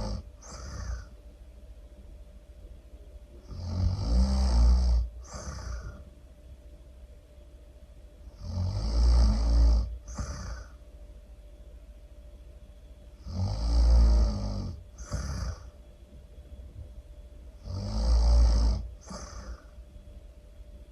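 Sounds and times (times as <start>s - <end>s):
loud snoring: 0.0s - 1.2s, 3.4s - 6.0s, 8.3s - 10.8s, 13.2s - 15.8s, 17.6s - 19.7s
soft breath: 0.0s - 1.3s, 5.0s - 6.2s, 9.8s - 11.0s, 14.8s - 16.0s, 18.8s - 20.0s.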